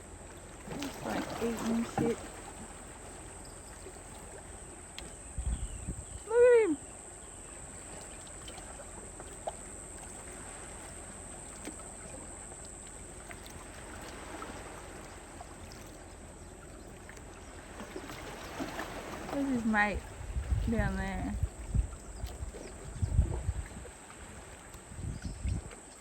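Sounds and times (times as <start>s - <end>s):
water lapping among rocks: 0.0s - 26.0s
small ticks: 4.9s - 5.2s.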